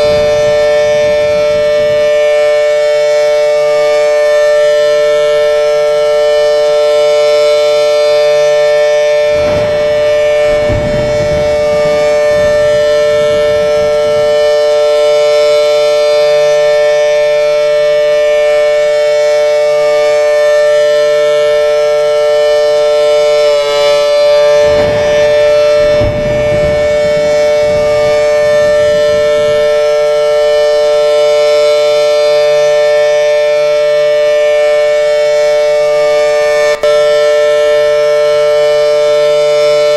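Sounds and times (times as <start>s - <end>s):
air raid siren steady tone: 0.0s - 39.9s.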